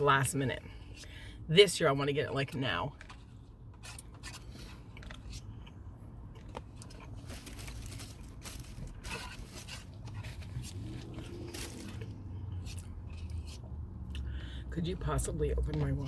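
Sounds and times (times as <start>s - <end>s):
food crunching: 3.0s - 14.2s
rustling: 6.8s - 13.6s.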